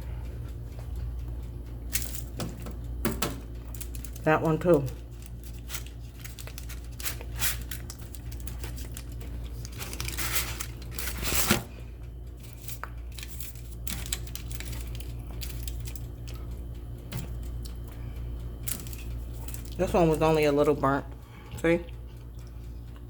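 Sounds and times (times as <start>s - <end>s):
steady low hum: 0.0s - 23.0s
cookies breaking apart: 5.0s - 17.9s.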